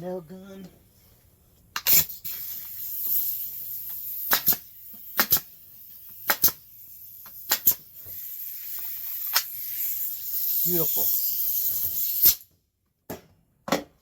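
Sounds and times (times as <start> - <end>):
nail gun firing: 4.2 - 5.6, 6.2 - 6.6, 7.3 - 7.8.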